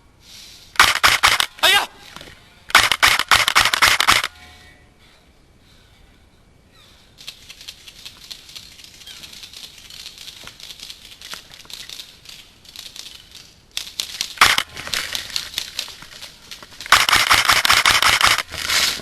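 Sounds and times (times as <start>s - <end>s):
rustling and crackling: 7.0s - 19.0s.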